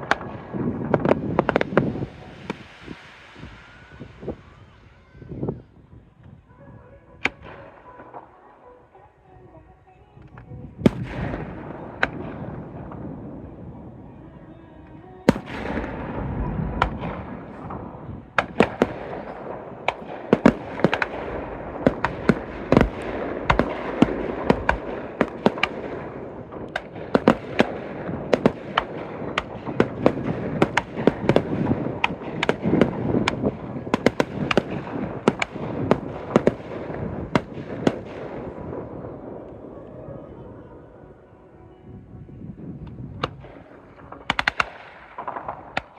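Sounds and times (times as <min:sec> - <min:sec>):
fireworks bangs and cracks: 0:00.0 - 0:05.6, 0:10.8 - 0:13.5, 0:15.3 - 0:39.6, 0:43.2 - 0:45.9.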